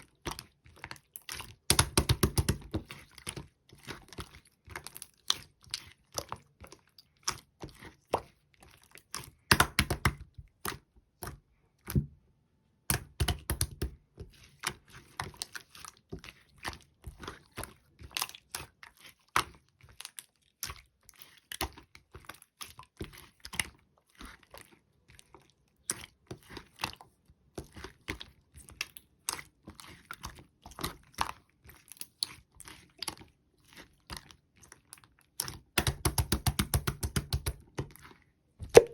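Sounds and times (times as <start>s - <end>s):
slime squished by hand: 27.6s - 38.9s.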